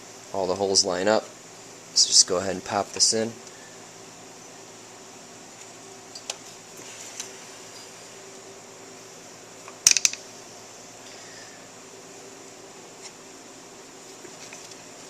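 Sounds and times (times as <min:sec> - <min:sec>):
fan-like hum: 0:00.0 - 0:15.0
metal parts clicking: 0:09.8 - 0:10.2.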